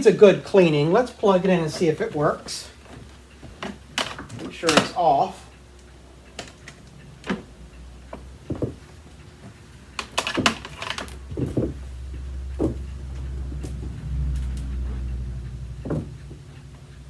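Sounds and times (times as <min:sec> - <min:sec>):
low rumble: 0:11.2 - 0:17.0.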